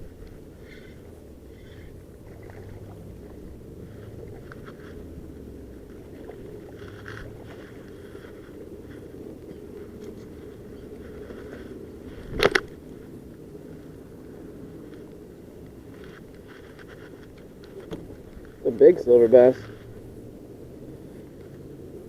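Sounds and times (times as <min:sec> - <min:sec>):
water around a boat: 0:00.0 - 0:22.0
wind: 0:00.0 - 0:22.0
fishing tackle clicking and rattling: 0:02.3 - 0:12.8.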